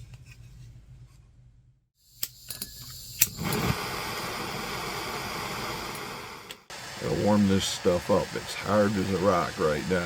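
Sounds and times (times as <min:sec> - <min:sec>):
heating tool rushing noise: 0:02.9 - 0:10.0.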